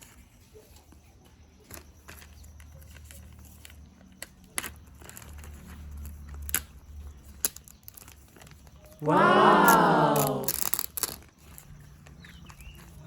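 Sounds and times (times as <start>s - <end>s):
plastic toys clicking: 1.7s - 8.9s, 10.2s - 13.0s.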